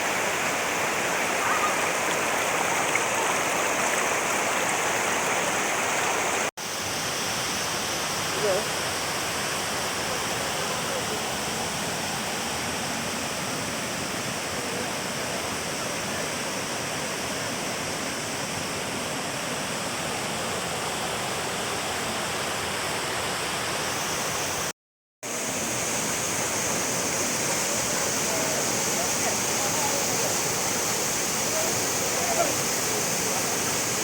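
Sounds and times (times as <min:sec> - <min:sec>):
waterfall rushing: 0:00.0 - 0:24.7, 0:25.3 - 0:34.0.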